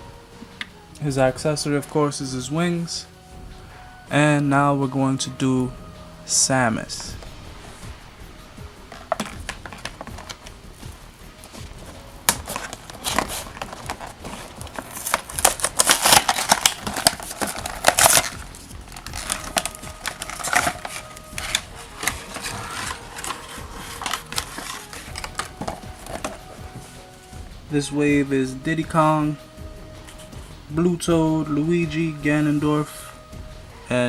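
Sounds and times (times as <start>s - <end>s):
packaging rustling and crinkling: 8.8s - 27.4s.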